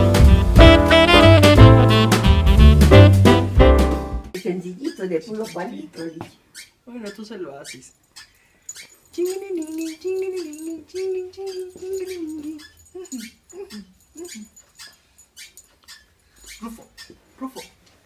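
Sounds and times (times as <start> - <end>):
dog whining: 8.2 - 17.8.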